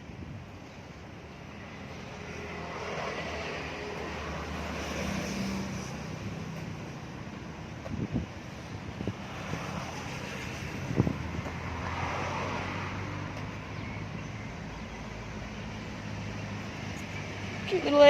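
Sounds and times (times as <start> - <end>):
motor vehicle passing: 2.2 - 18.0.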